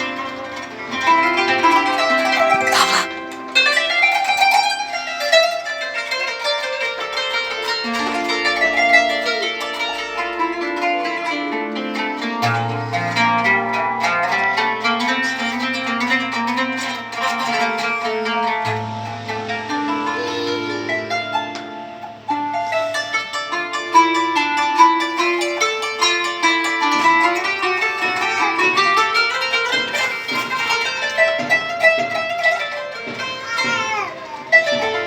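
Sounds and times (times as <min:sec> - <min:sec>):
plucked zither runs: 0:00.0 - 0:35.0
long held low notes: 0:18.8 - 0:22.1.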